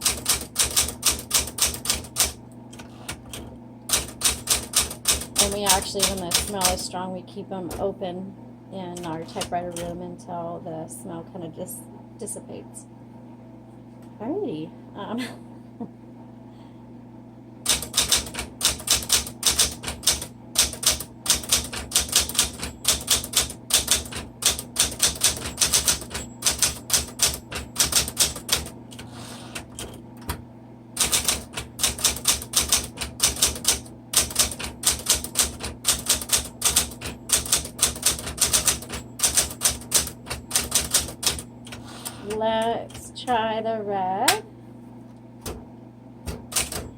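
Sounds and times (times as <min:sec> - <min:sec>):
manual typewriter typing: 0:00.0 - 0:06.9, 0:09.0 - 0:10.0, 0:17.7 - 0:30.0, 0:31.0 - 0:43.4, 0:46.3 - 0:46.9
steady low hum: 0:00.0 - 0:46.9.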